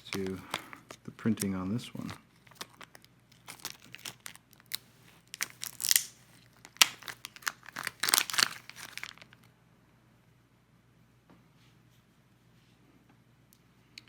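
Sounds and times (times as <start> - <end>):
label crinkling and tearing: 0.0 - 9.5.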